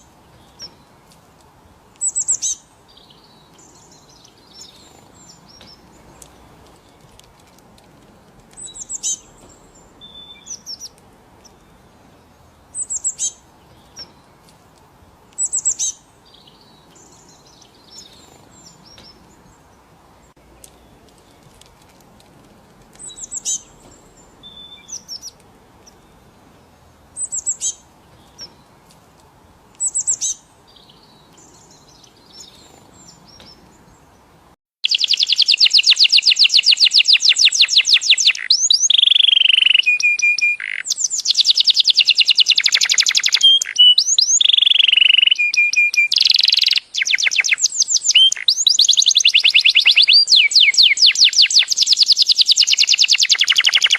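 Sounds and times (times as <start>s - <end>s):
faint outdoor hiss: 0.0s - 53.9s
songbird trilling and whistling: 2.0s - 7.1s, 8.6s - 11.9s, 12.7s - 14.2s, 15.3s - 19.3s, 23.0s - 26.0s, 27.2s - 28.6s, 29.8s - 33.6s, 34.8s - 53.9s
short bird chirps: 34.8s - 53.9s.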